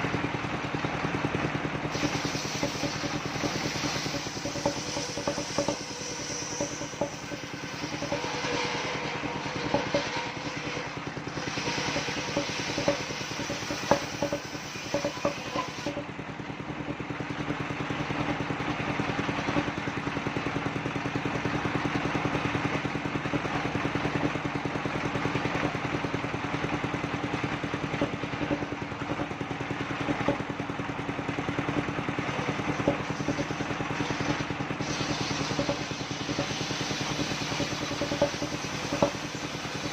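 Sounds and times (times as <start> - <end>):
engine-driven sawmill running: 0.0 - 39.9
knocks and clatter: 2.0 - 16.1, 30.0 - 30.5, 31.8 - 39.9.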